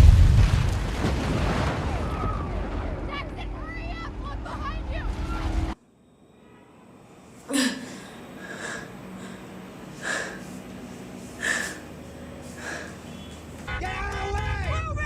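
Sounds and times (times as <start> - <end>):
person sneezing: 7.5 - 8.1.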